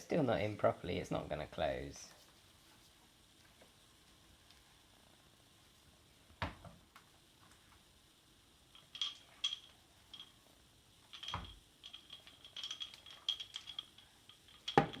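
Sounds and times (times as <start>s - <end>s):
plastic clicks and rattles: 8.8s - 10.3s, 11.1s - 15.0s.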